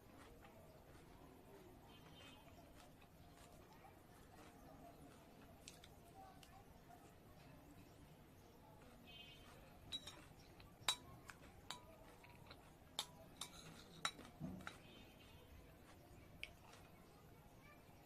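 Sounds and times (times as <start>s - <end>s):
spoon clinking against plate: 9.8s - 15.0s.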